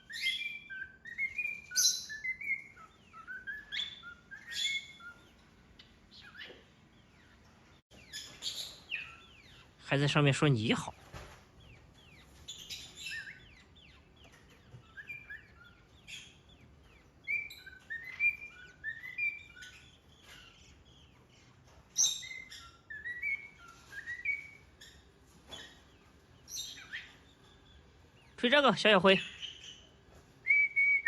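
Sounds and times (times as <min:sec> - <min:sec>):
parrot whistling: 0:00.0 - 0:05.3, 0:17.2 - 0:20.5, 0:22.0 - 0:24.6, 0:30.4 - 0:31.0.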